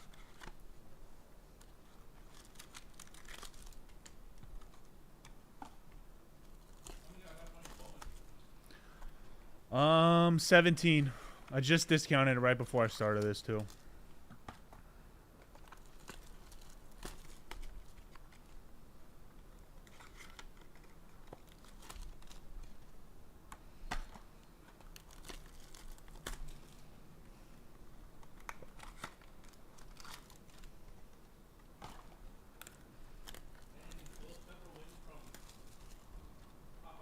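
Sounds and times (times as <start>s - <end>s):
wrapper crinkling and tearing: 1.6s - 4.9s, 6.5s - 8.4s, 13.1s - 13.9s, 15.5s - 18.6s, 19.8s - 22.9s, 24.6s - 26.9s, 28.2s - 30.8s, 32.6s - 36.1s.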